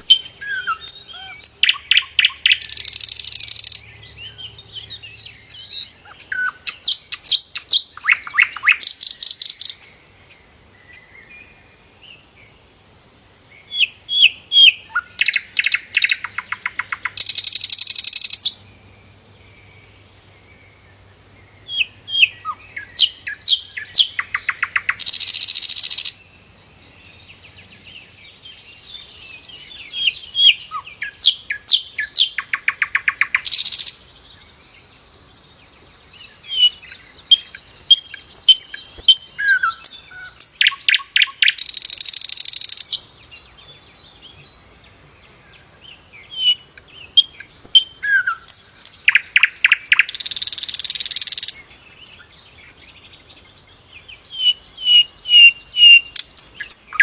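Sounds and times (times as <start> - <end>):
bird chirping and whistling: 36.6 - 43.0, 46.4 - 51.6, 54.4 - 57.0.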